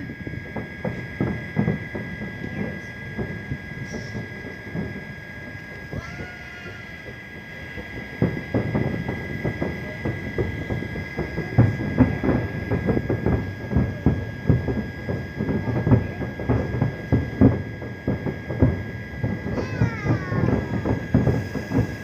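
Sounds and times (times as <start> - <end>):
fireworks bangs and pops: 0.0 - 22.0.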